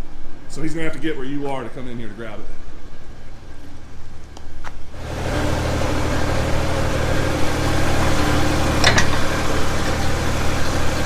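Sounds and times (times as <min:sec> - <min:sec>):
loader engine running: 0:03.1 - 0:11.0
metallic clank: 0:05.1 - 0:11.0.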